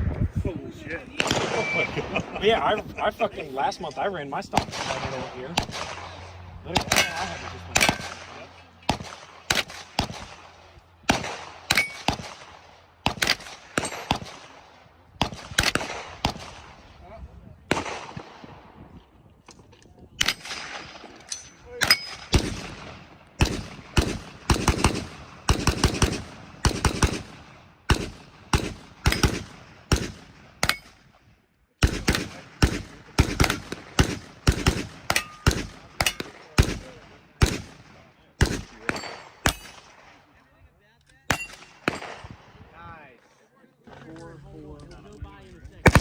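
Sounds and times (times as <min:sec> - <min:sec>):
rapid gunfire: 0:06.7 - 0:14.6, 0:22.2 - 0:30.8, 0:31.8 - 0:40.0.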